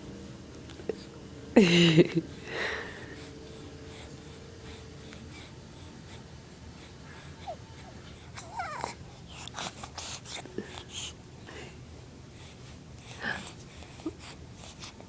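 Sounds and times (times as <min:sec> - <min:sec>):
baby breathing: 0:00.8 - 0:11.7.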